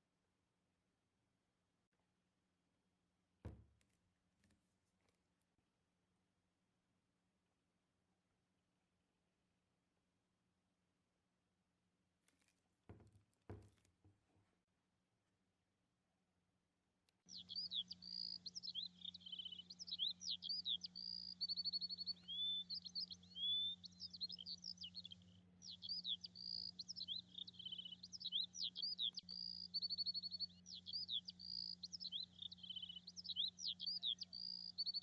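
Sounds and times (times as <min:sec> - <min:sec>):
birds chirping and singing: 0:17.3 - 0:35.0
faint low hum: 0:17.3 - 0:35.0.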